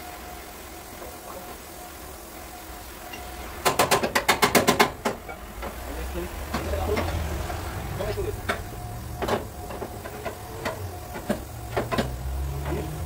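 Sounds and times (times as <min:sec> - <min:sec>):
hammer striking metal: 0:03.1 - 0:05.8.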